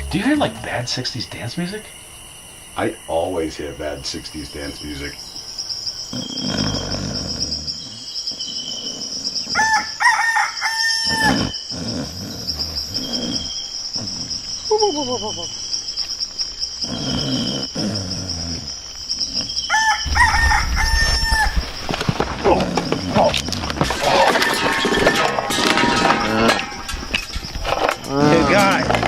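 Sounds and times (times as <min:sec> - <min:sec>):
crickets chirring: 0:00.0 - 0:29.0
rooster crowing: 0:09.5 - 0:11.4, 0:19.7 - 0:21.8.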